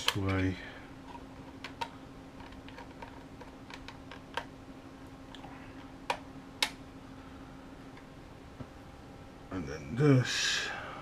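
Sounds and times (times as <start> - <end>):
faint steady hum: 0.0 - 11.0.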